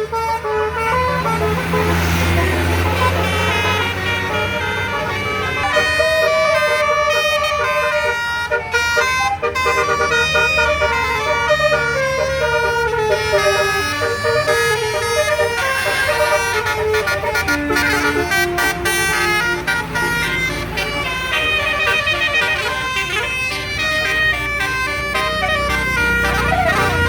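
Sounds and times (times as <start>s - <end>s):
bus engine running: 0.0s - 27.0s
musical air horn tune: 0.0s - 27.0s.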